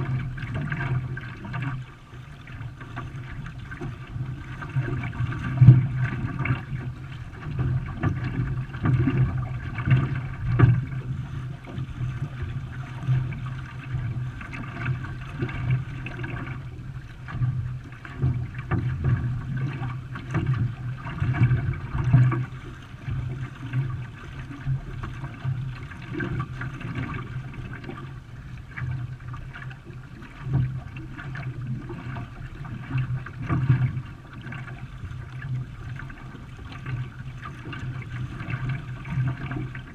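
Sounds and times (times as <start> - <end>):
water splashing around canoe: 0.0 - 39.9.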